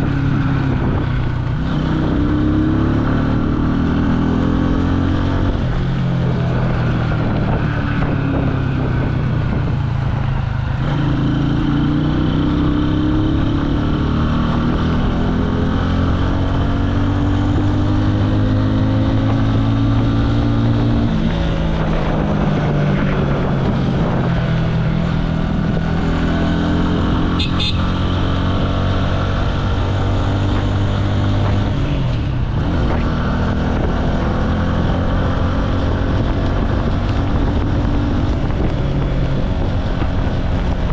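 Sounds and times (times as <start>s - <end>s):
motorcycle engine shifting gears: 0.0s - 40.9s
wind noise on microphone: 0.0s - 40.9s.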